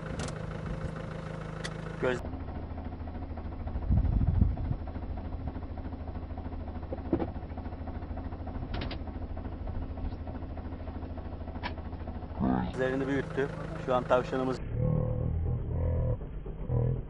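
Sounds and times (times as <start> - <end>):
vehicle engine idling: 0.0 - 17.0
loud low rumble: 2.0 - 5.6, 12.3 - 17.0.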